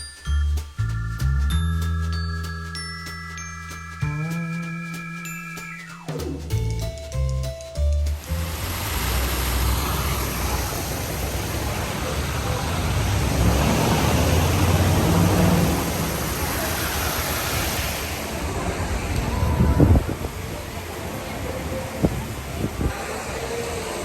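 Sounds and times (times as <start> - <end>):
low rumble of traffic: 6.6 - 24.0
wind on microphone: 8.3 - 24.0
faint voices: 8.6 - 24.0.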